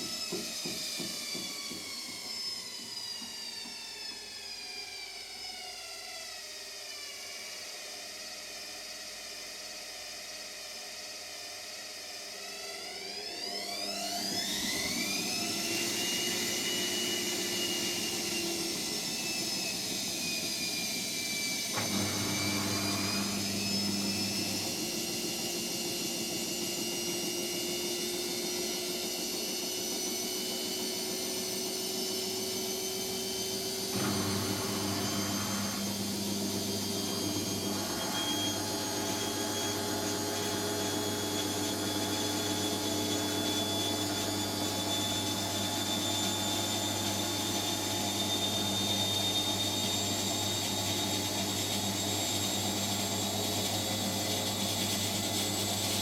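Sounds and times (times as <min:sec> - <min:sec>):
washing machine motor whine: 0:11.5 - 0:56.0.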